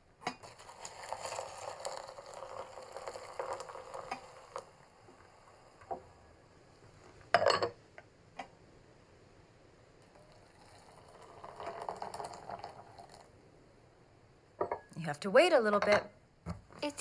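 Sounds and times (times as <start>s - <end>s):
hot water pouring: 0.3s - 7.2s, 10.0s - 13.4s.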